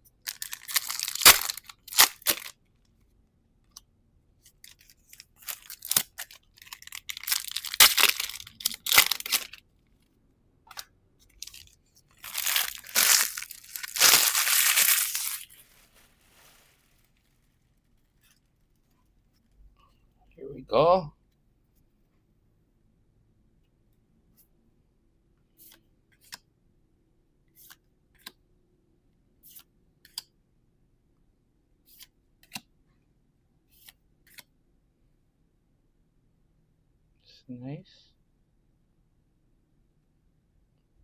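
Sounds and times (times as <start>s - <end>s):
foil wrappers tearing and crinkling: 0.3s - 2.5s, 5.1s - 9.6s, 11.4s - 16.9s.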